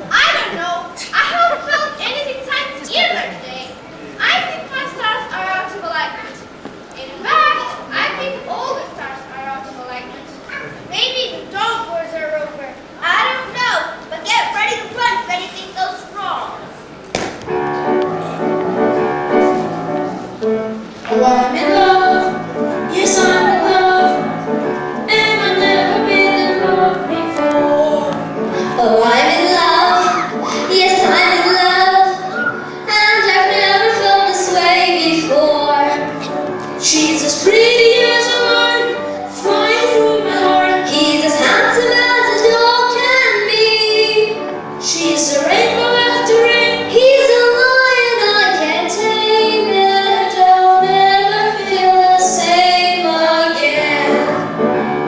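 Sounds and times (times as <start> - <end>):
instrumental accompaniment: 17.1 - 55.0
girl singing: 21.1 - 24.3, 25.0 - 54.4.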